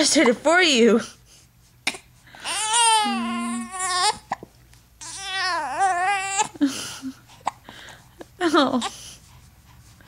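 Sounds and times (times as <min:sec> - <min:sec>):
baby crying: 0:02.4 - 0:04.3, 0:05.0 - 0:06.6.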